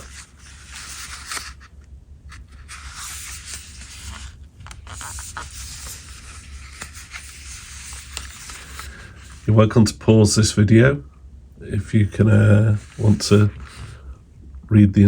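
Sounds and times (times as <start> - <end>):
packaging rustling and scraping: 0.0 - 9.5, 12.7 - 14.1
steady low hum: 0.0 - 15.0.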